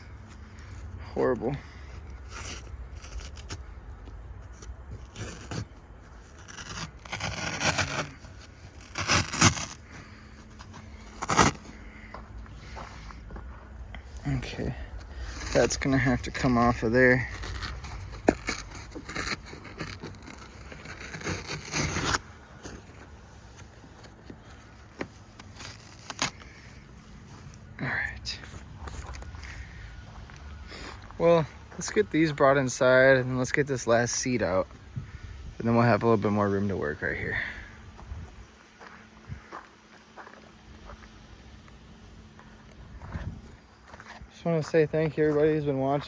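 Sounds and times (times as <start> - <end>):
carpet scraping and rubbing: 0.0 - 29.8.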